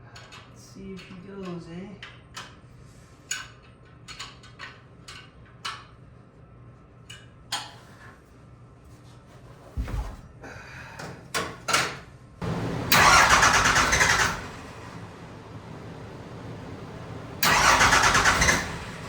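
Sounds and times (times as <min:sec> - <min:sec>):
diesel engine cranking and running: 0:12.4 - 0:19.0.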